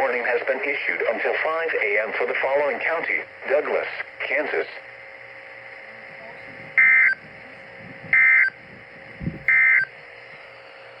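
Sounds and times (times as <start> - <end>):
harsh digital data tone bursts: 6.8 - 7.2, 8.1 - 8.6, 9.5 - 9.9.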